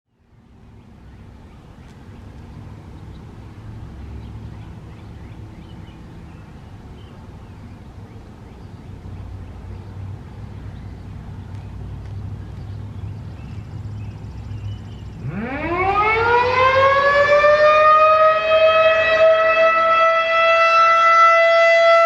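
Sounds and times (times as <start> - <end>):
traffic rumble: 0.1 - 22.0
small birds chirping: 0.2 - 15.4.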